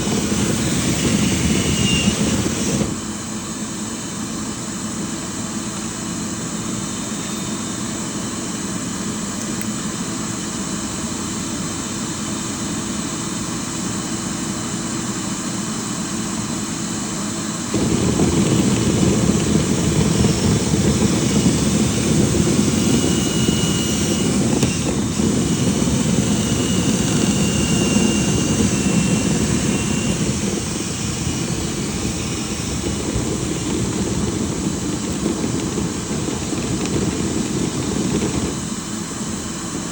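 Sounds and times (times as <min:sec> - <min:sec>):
motor with rushing air: 0:00.0 - 0:03.5, 0:17.6 - 0:39.9.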